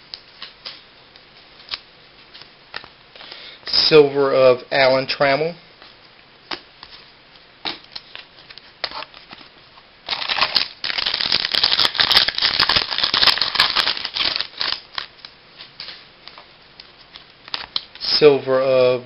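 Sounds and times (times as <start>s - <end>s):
cards rustling and crackling: 5.8s - 18.2s.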